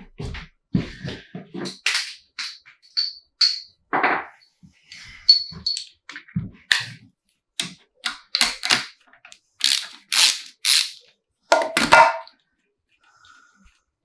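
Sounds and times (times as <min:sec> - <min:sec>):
sharp mechanical clacks of tools: 0:07.6 - 0:09.0, 0:09.6 - 0:11.0.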